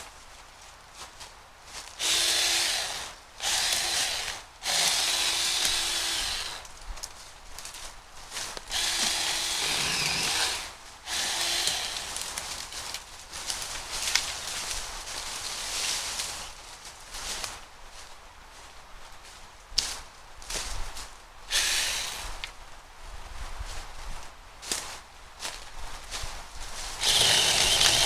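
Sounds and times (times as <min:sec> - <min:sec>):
mini chainsaw cutting wood: 0:02.0 - 0:06.6, 0:08.7 - 0:12.4, 0:21.5 - 0:22.4, 0:27.0 - 0:28.0.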